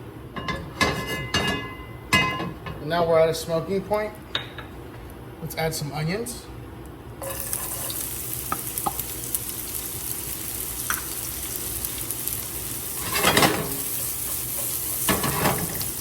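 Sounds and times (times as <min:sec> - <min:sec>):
onions sizzling in oil: 0:07.2 - 0:16.0.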